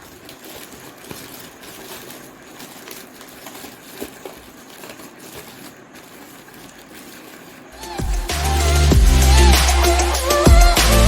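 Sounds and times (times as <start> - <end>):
light rustling: 0.0 - 8.0.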